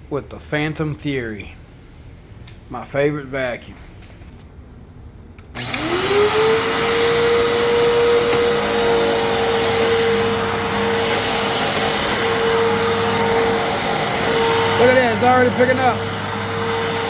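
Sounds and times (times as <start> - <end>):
vacuum cleaner air rush: 5.6 - 17.0
vacuum cleaner motor whine: 5.6 - 17.0.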